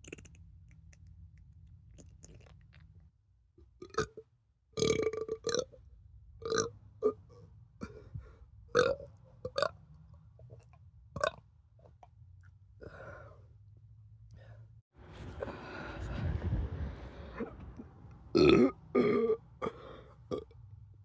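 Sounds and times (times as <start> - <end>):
man burping loudly: 18.4 - 20.5.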